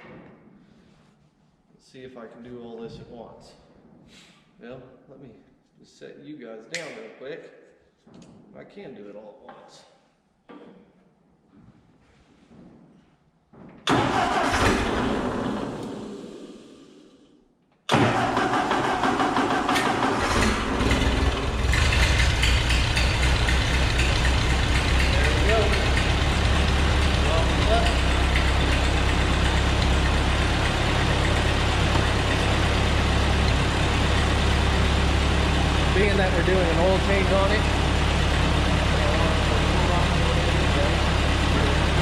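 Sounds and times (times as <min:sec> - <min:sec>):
tractor engine cranking: 0:13.9 - 0:15.9, 0:17.9 - 0:42.0.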